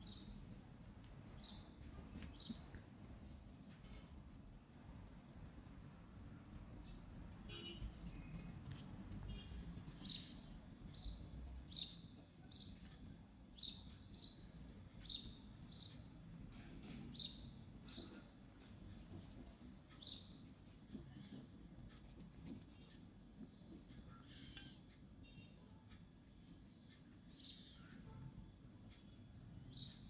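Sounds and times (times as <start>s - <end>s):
faint low hum: 0.0s - 30.0s
bird chirping: 9.3s - 16.3s, 17.1s - 18.4s, 19.9s - 21.4s, 29.0s - 30.0s.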